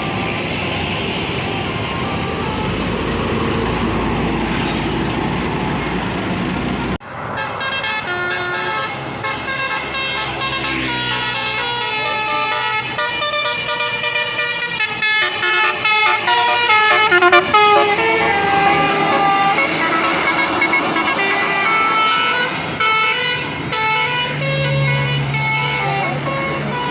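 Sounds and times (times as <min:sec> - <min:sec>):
low engine drone: 0:00.0 - 0:07.0, 0:15.4 - 0:23.3
bus passing: 0:00.0 - 0:26.9
bus horn playing a melody: 0:07.4 - 0:26.9.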